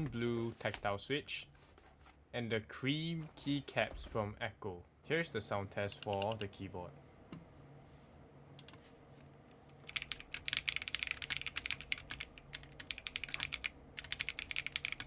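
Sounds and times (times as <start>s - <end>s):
typing on mechanical keyboard: 9.8s - 15.0s.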